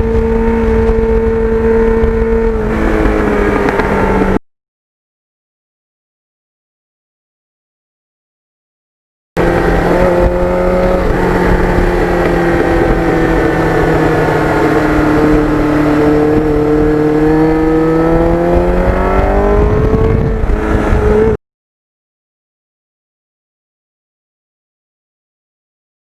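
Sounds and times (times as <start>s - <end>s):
motorcycle engine running: 0.0s - 4.4s, 9.4s - 21.4s
wind noise: 0.0s - 4.4s, 9.4s - 21.4s.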